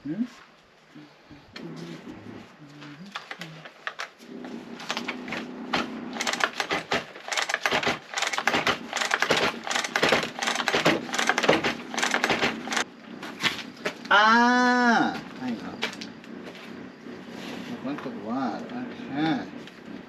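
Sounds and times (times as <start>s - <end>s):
chainsaw recoil starter clicking: 6.2s - 12.8s.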